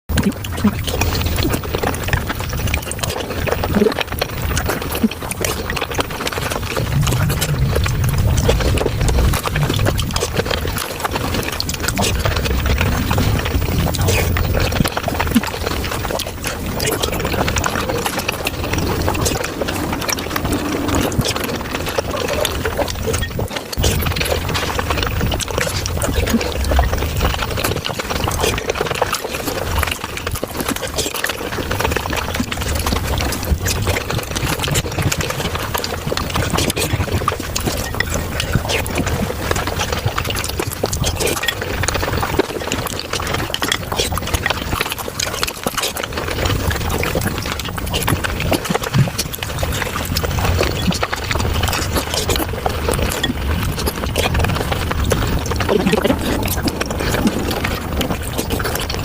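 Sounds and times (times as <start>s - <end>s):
sped-up chewing and mouth sounds: 0.1s - 59.0s.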